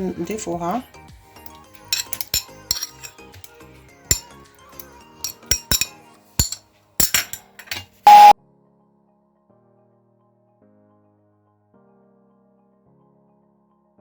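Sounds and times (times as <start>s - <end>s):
soft background music: 0.0s - 5.9s
utensil clinking on container: 1.4s - 8.3s.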